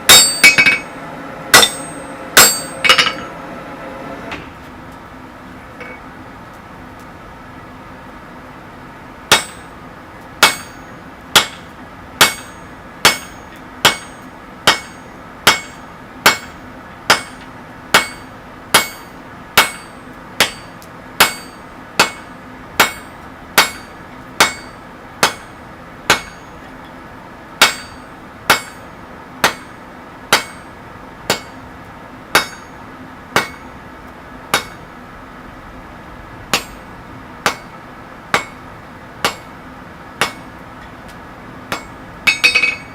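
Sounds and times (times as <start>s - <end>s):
hammer striking steel on anvil: 0.0s - 3.4s, 9.3s - 9.7s, 10.4s - 27.0s, 27.6s - 31.7s, 32.3s - 33.8s, 34.5s - 34.9s, 36.5s - 38.6s, 39.2s - 39.5s, 40.2s - 41.0s, 41.7s - 42.9s
steady hum: 0.0s - 42.9s.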